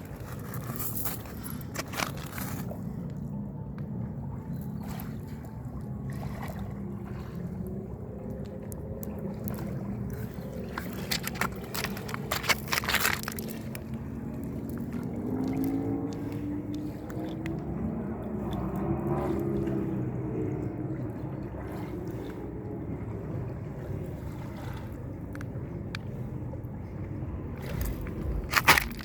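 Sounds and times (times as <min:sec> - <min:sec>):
low mechanical hum: 0:00.0 - 0:29.0
water sloshing: 0:00.0 - 0:29.0.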